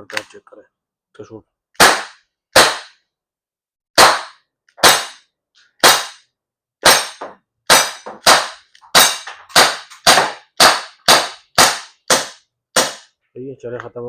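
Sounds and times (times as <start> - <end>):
air pistol shots: 1.8 - 3.0, 4.0 - 5.2, 5.8 - 6.2, 6.8 - 13.1.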